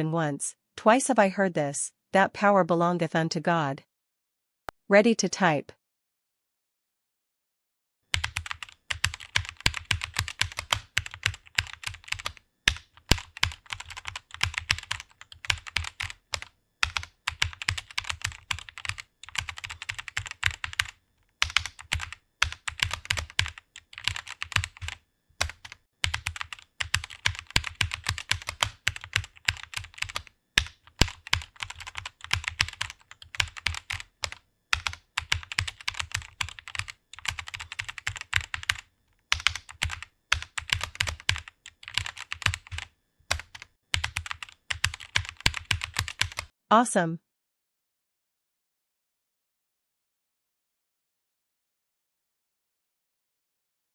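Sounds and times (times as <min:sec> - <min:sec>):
fast keyboard typing: 0:08.1 - 0:46.5.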